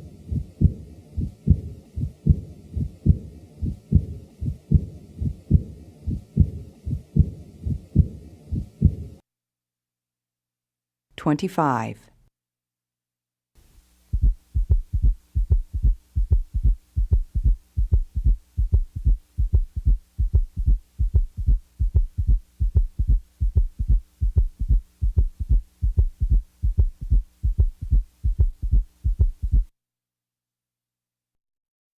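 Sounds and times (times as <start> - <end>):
faint steady hum: 0.0 - 9.2, 13.6 - 29.7
heartbeat thuds: 0.0 - 9.2, 14.1 - 29.7.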